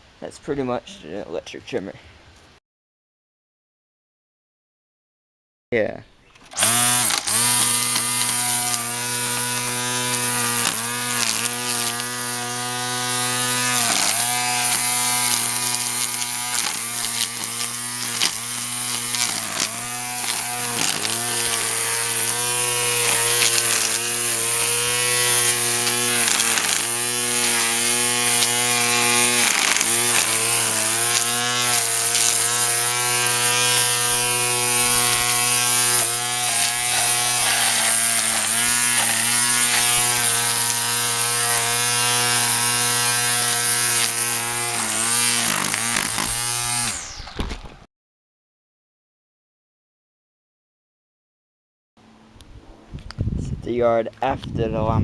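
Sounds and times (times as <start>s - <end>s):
electric lawn tool motor whining: 6.4s - 47.8s.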